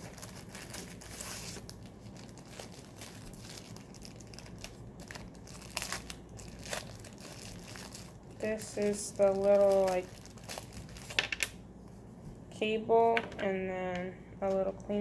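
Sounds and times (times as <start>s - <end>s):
packaging crinkling and rustling: 0.0s - 11.5s.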